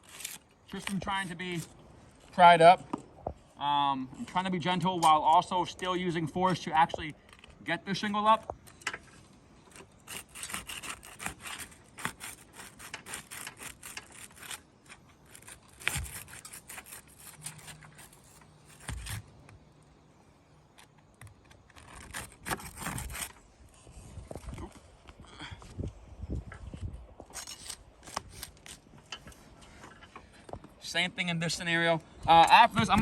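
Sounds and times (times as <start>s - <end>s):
roof shingles scraping and crackling: 0.0s - 2.6s, 8.3s - 19.6s, 20.8s - 24.8s, 27.2s - 29.8s.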